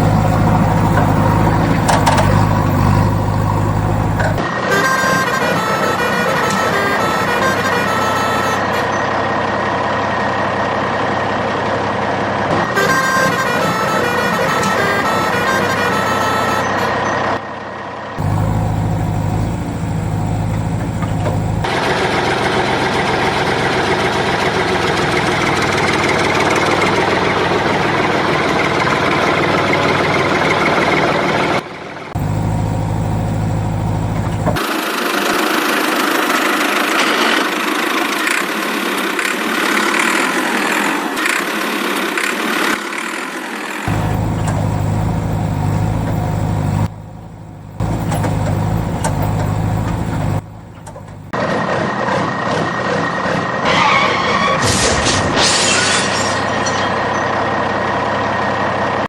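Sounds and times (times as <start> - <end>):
low engine hum: 0.0 - 4.4, 18.2 - 21.8, 32.2 - 34.6, 43.9 - 51.4
machinery working clatter: 0.0 - 4.8, 18.2 - 31.6, 32.2 - 53.8.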